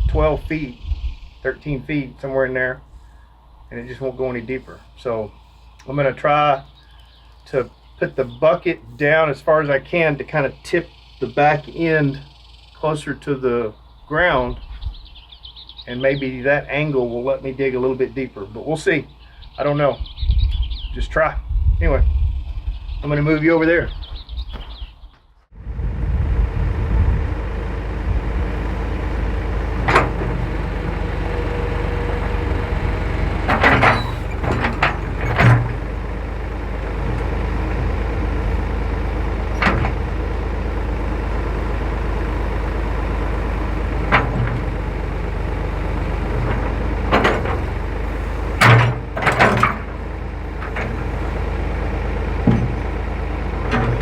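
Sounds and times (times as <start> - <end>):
backhoe engine running: 0.0 - 20.9, 21.6 - 54.0
bucket clanking: 28.6 - 54.0.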